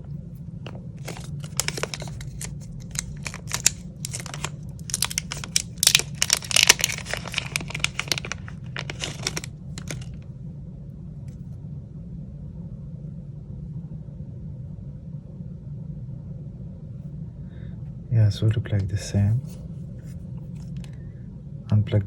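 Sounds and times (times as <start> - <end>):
steady low hum: 0.0 - 22.0
plastic packaging crinkling: 0.6 - 10.2.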